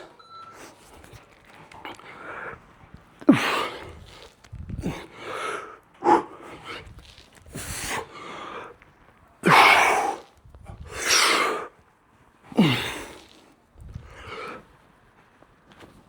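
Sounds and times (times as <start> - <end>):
man breathing hard: 0.0 - 6.9, 12.5 - 14.8.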